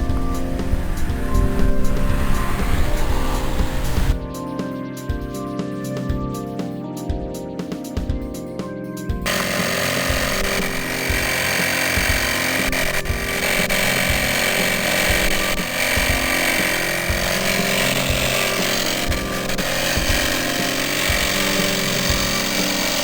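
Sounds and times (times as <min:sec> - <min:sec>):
loud steady mechanical noise: 0:00.0 - 0:04.2, 0:09.3 - 0:23.0.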